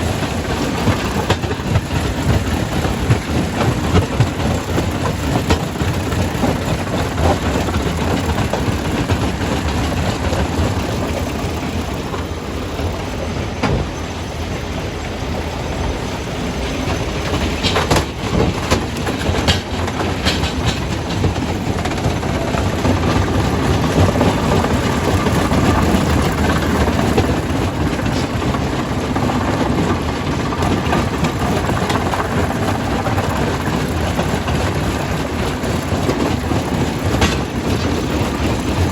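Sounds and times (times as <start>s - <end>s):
rock crusher rumbling and rattling: 17.0s - 38.9s.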